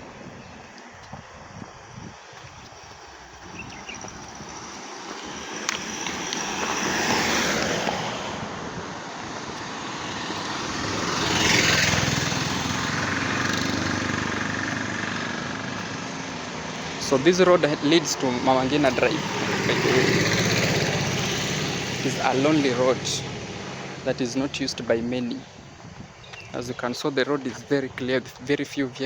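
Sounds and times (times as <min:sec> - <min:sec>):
vehicles passing: 0:00.0 - 0:29.0
engine running: 0:02.8 - 0:25.0.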